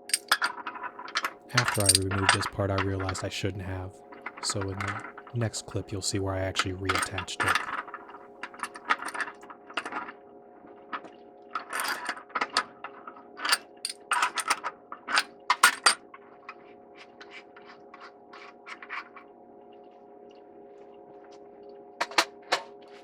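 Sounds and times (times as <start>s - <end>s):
metal wrenches and fittings clinking: 1.2s - 3.3s, 4.4s - 5.1s
steady hum: 1.5s - 7.9s.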